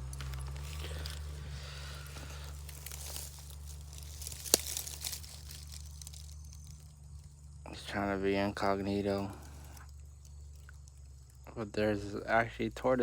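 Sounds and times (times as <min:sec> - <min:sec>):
rustling and crunching brush: 0:00.0 - 0:07.6.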